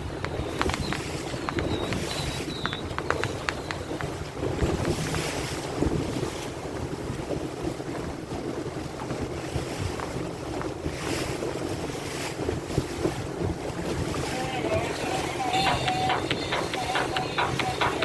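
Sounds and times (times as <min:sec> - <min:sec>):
waves splashing against hull: 0:00.0 - 0:18.0
wind buffeting microphone: 0:00.0 - 0:18.0
boat engine droning: 0:12.6 - 0:18.0.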